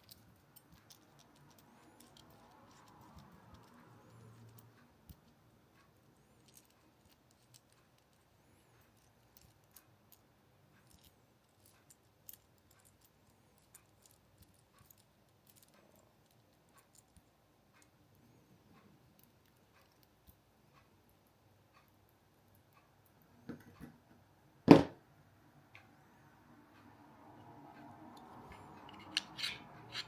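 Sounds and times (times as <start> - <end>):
light clicks and taps of handling: 0.0 - 10.2, 10.8 - 24.2.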